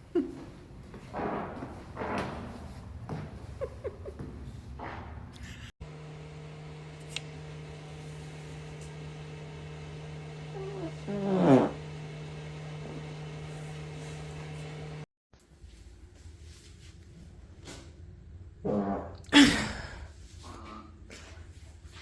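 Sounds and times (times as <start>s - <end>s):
person farting: 11.1s - 11.8s, 18.6s - 19.4s.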